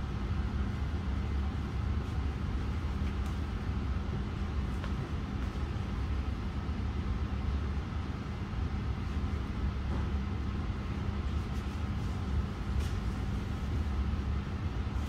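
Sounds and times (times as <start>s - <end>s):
low rumble with hum: 0.0s - 15.0s.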